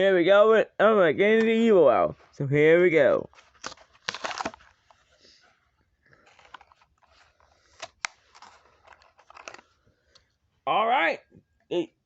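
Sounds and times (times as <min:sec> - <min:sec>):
plastic packaging crinkling: 0:03.2 - 0:05.1, 0:06.1 - 0:09.8.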